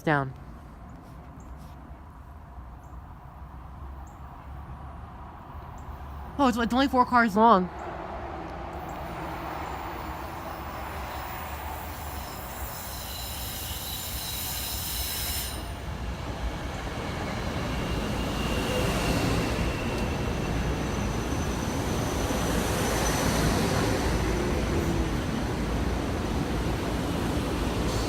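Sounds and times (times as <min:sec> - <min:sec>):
electric train moving on track: 0:01.3 - 0:28.0
high steady squealing: 0:08.8 - 0:16.0.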